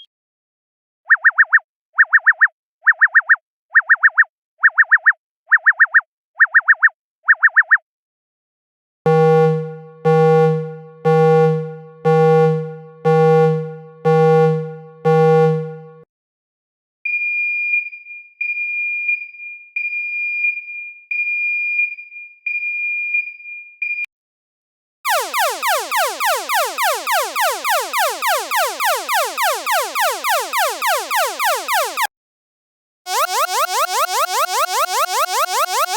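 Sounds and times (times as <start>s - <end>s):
fast falling alarm sweep: 9.1s - 16.0s, 25.1s - 32.1s, 33.1s - 35.9s
high steady beeps: 9.1s - 16.0s
low ringing alarm tones: 9.1s - 16.0s.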